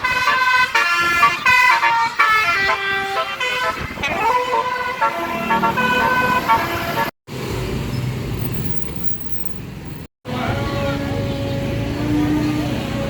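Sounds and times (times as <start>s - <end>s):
bus horn playing melody: 0.0s - 7.1s
bus engine: 0.0s - 13.0s
traffic noise: 0.0s - 13.0s.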